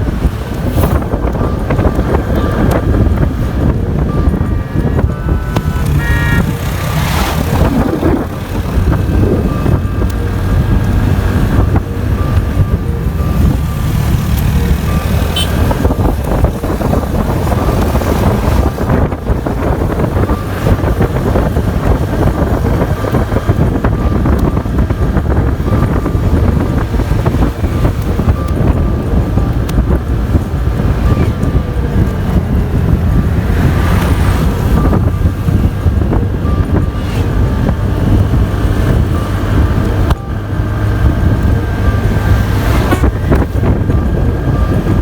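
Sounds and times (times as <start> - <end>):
vehicle road noise: 0.0 - 45.0
short horn toots: 4.4 - 6.8, 15.3 - 15.8.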